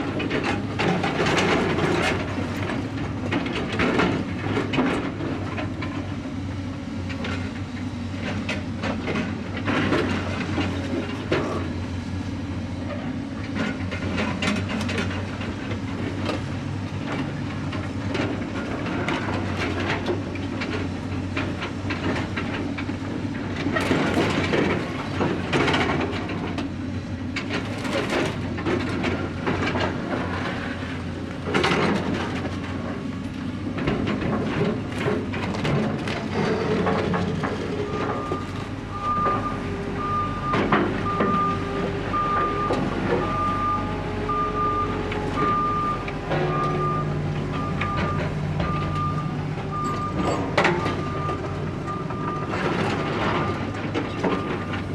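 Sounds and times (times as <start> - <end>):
machinery running: 23.2 - 32.2
metallic clanks and knocks: 23.6 - 26.7.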